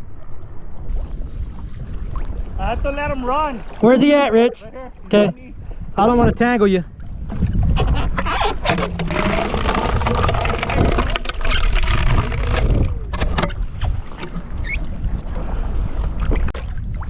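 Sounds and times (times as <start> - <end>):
wind buffeting microphone: 0.0 - 17.0
water sloshing against kayak: 0.8 - 6.3, 6.9 - 17.0
splashes: 0.9 - 4.3, 8.6 - 13.0.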